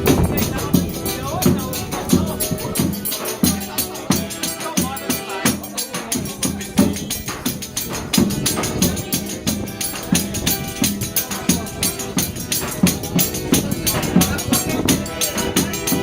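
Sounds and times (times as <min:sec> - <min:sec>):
bass drum thumps: 0:00.0 - 0:03.1
accordion: 0:00.0 - 0:16.0.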